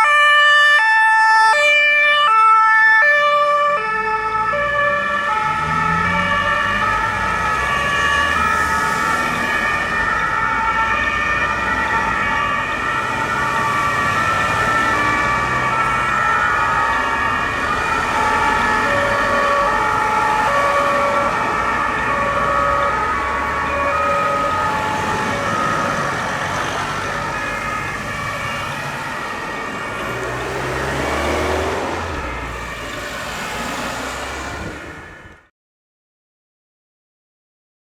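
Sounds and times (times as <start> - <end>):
two-tone emergency sirens: 0.0 - 35.5
vehicle engines running: 5.4 - 35.4.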